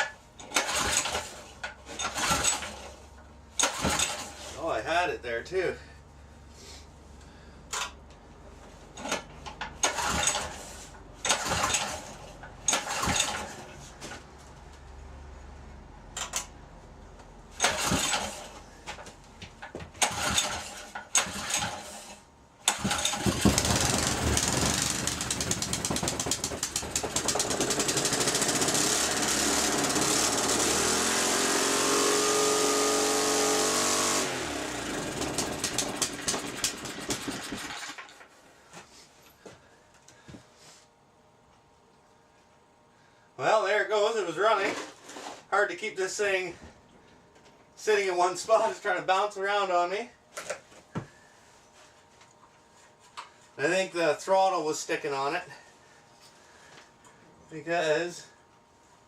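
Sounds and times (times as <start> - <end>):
recoil rope pulls: 0.4 - 3.0, 9.8 - 13.7, 17.6 - 18.6, 20.0 - 38.1
small engine running at high speed: 27.2 - 37.6.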